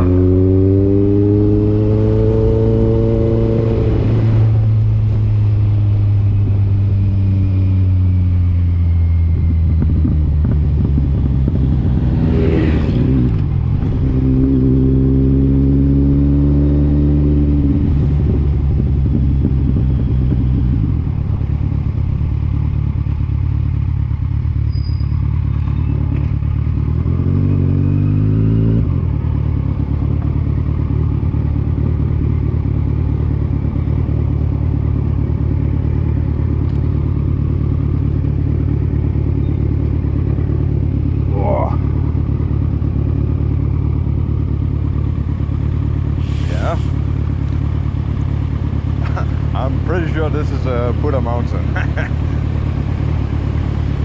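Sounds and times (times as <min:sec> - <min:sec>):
vehicle engine accelerating: 0:00.0 - 0:23.3, 0:24.7 - 0:54.0.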